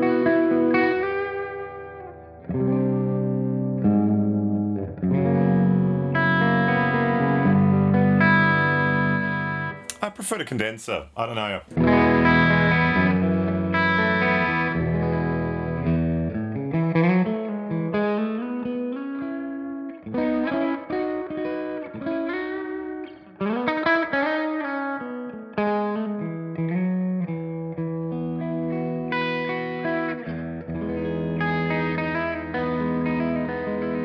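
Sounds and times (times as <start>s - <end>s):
driven electric guitar: 0.0s - 9.7s, 11.8s - 34.0s.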